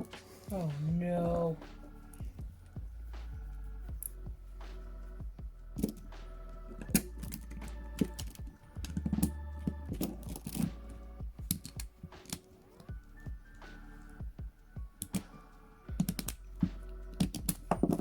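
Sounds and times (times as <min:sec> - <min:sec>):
handcuffs clicking: 0:11.5 - 0:12.5.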